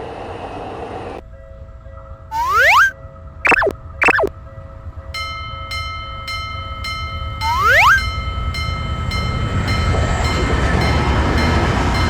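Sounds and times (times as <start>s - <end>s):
quick falling chirps: 2.3s - 2.9s, 3.5s - 4.3s, 7.4s - 8.0s
faint held tones: 2.3s - 4.3s, 7.4s - 8.1s
rising pitch glide: 2.3s - 4.3s, 7.4s - 8.1s.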